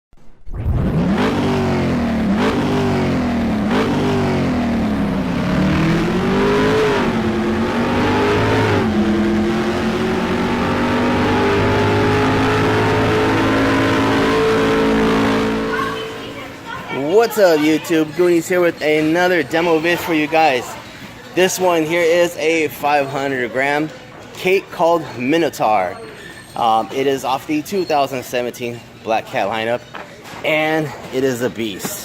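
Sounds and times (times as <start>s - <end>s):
car engine revving: 0.5s - 16.6s.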